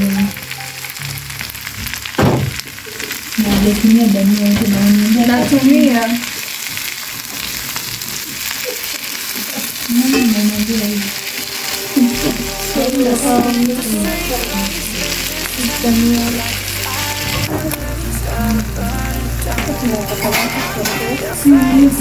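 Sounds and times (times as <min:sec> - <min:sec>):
background music: 0:00.0 - 0:02.2, 0:10.0 - 0:22.0
food sizzling in a pan: 0:00.0 - 0:22.0.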